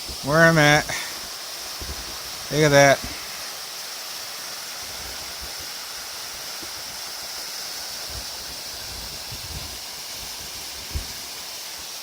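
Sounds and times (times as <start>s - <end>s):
waterfall rushing: 0.0s - 12.0s
soft low thumps: 10.8s - 11.3s.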